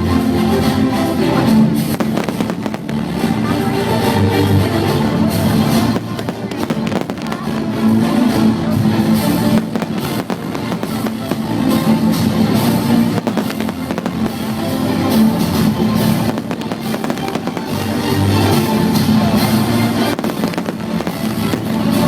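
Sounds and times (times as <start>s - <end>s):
fireworks cracking and banging: 0.3s - 22.0s
loud music with drums: 1.9s - 3.5s, 5.4s - 7.9s, 8.8s - 22.0s.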